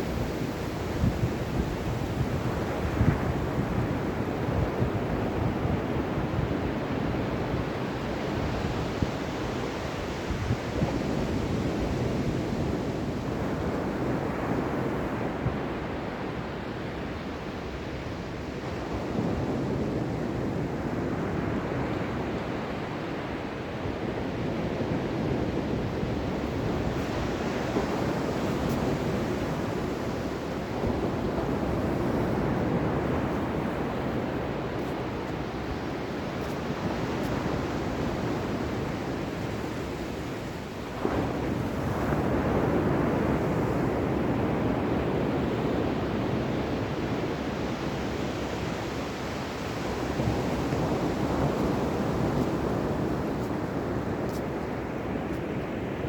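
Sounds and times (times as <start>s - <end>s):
ocean waves washing onto shore: 0.0s - 56.0s.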